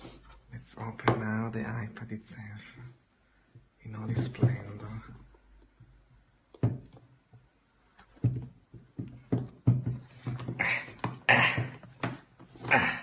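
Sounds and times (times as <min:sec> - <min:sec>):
rustling scrapes: 0:00.0 - 0:00.7
box being handled and opened: 0:03.9 - 0:05.8.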